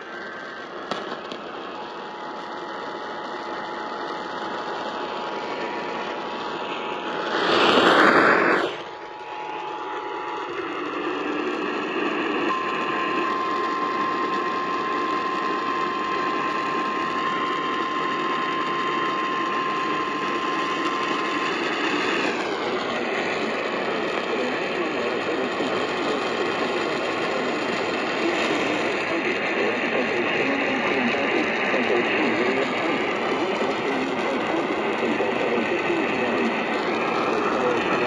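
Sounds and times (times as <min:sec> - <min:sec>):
radio static hiss: 0:00.0 - 0:38.0
burst of noise: 0:05.5 - 0:11.8
emergency alert tone: 0:09.2 - 0:22.7.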